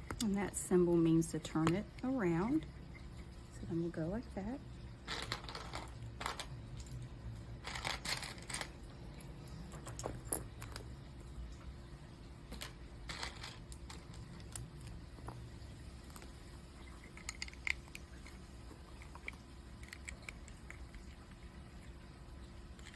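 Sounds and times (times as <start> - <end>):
plastic bricks clicking: 17.1 - 18.4.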